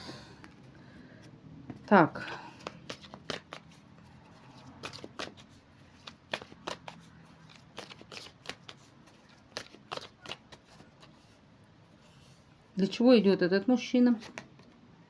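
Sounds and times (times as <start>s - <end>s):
cards shuffling: 1.7s - 11.4s, 14.2s - 14.6s.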